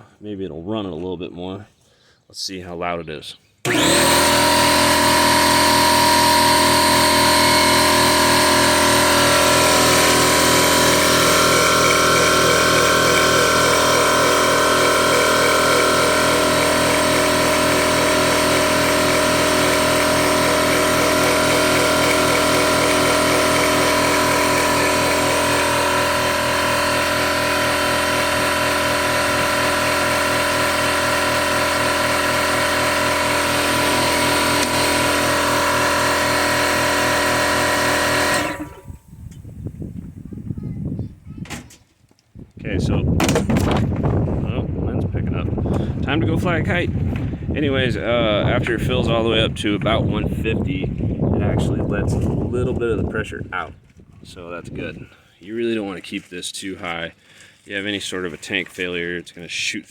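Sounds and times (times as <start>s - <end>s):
air compressor drone: 3.7s - 40.2s.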